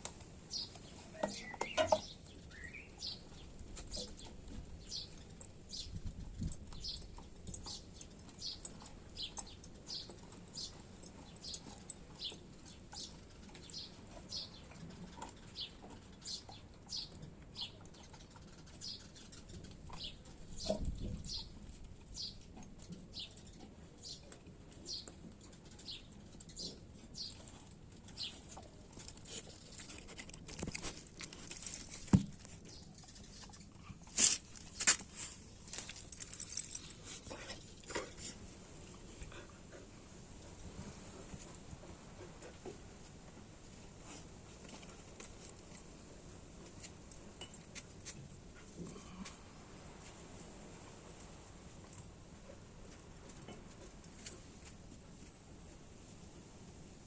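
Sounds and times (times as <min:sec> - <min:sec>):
small bird chirping: 0:00.5 - 0:06.0.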